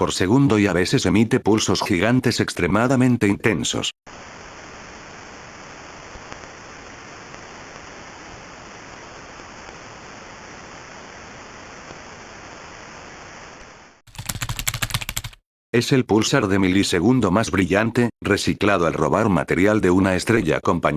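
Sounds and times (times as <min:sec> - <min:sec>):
static-like hiss: 0:00.0 - 0:14.0.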